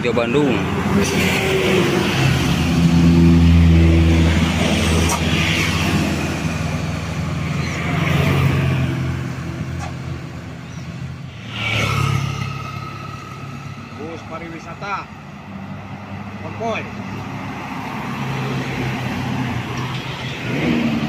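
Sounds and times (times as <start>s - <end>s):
diesel bus engines labouring: 0.0s - 21.0s.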